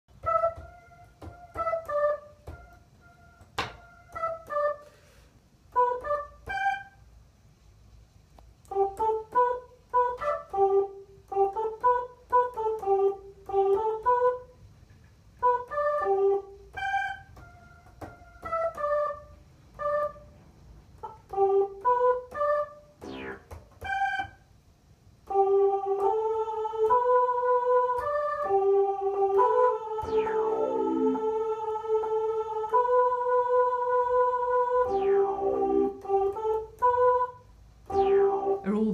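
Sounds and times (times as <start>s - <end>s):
falling pitch sweep: 23.0s - 23.5s, 34.8s - 36.0s
electronic keyboard piano notes: 29.4s - 31.4s, 34.8s - 36.3s.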